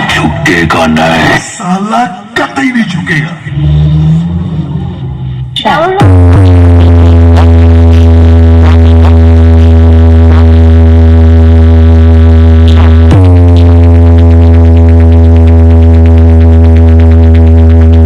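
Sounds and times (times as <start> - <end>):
synthesized bass tone: 0.0 - 18.0.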